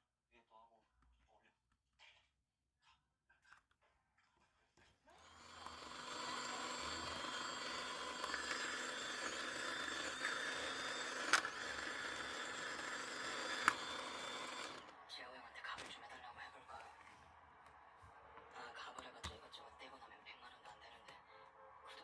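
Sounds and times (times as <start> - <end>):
washing machine motor whir: 5.1 - 15.2.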